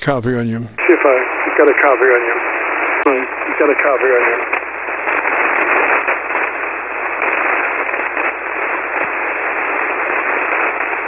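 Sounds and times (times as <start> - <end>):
shortwave radio static hiss: 0.0 - 11.0.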